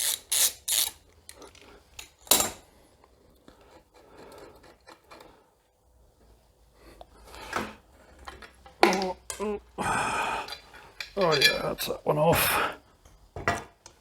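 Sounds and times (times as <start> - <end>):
ratchet wrench clicking: 0.0 - 1.0.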